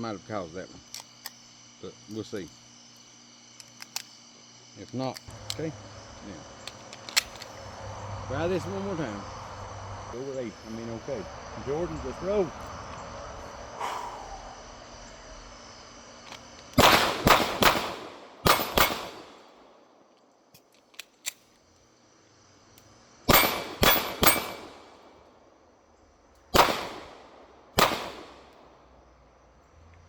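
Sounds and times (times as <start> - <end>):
pistol shots with echo: 16.8 - 19.7, 23.3 - 25.1, 26.5 - 28.6.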